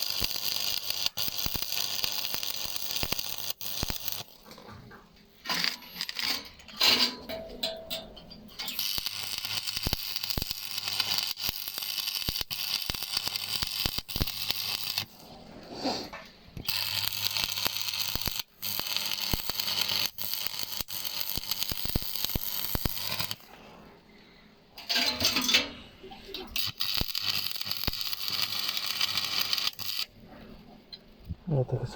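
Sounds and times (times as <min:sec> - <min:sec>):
welding arc crackling: 0:00.0 - 0:04.6, 0:05.4 - 0:07.0, 0:08.5 - 0:15.3, 0:16.6 - 0:23.6, 0:26.4 - 0:30.1.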